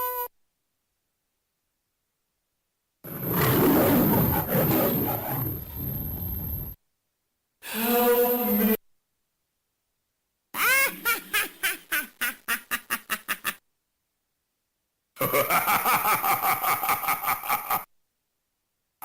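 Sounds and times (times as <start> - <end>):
electronic chattering pulses: 3.1 - 6.8
electronic pulsing sound: 3.1 - 6.8.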